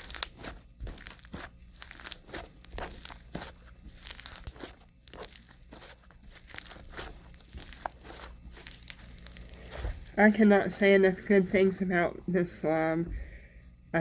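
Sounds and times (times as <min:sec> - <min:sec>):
slime crunching and crackling: 0:00.0 - 0:11.0.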